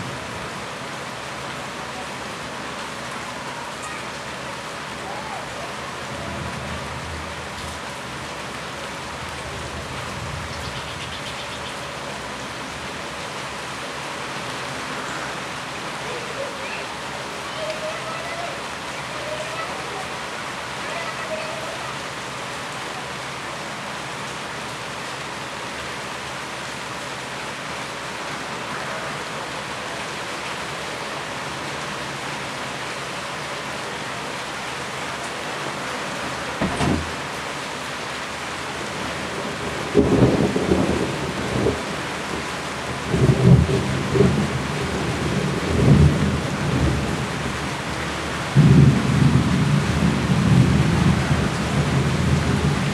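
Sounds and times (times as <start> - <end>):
steady rain falling: 0.0 - 52.9
thunder rumbling: 38.8 - 52.9.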